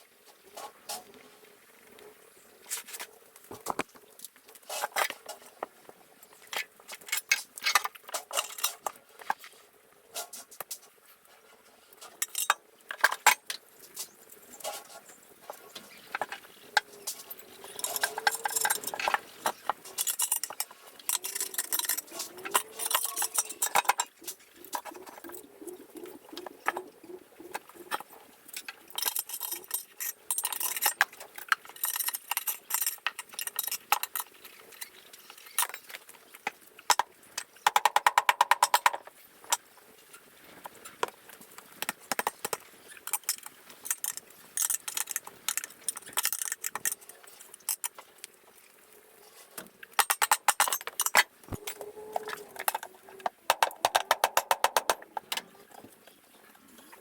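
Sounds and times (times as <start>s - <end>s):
hand tools clinking on metal: 17.2s - 24.3s, 28.6s - 35.9s, 50.0s - 52.9s.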